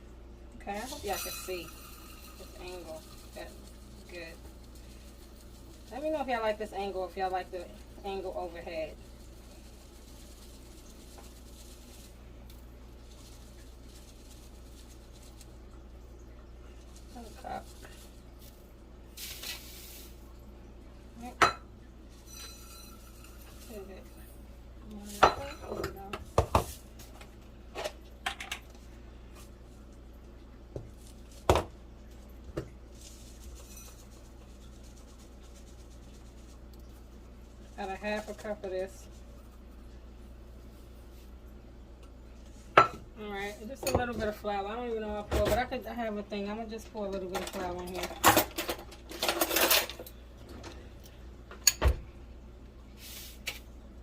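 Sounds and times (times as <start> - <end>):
flour pouring into bowl: 0.7 - 16.0, 16.8 - 20.4, 22.0 - 24.4, 32.8 - 39.8
dishes and utensils clinking: 0.9 - 4.1, 21.3 - 24.2, 25.0 - 26.8, 47.3 - 50.8.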